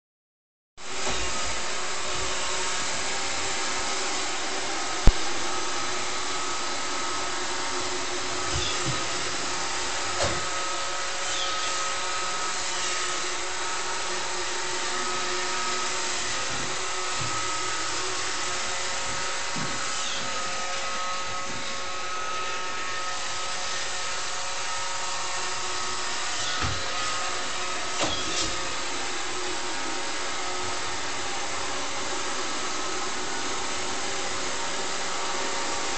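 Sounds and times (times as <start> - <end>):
robot vacuum motor whirring: 15.0 - 22.9.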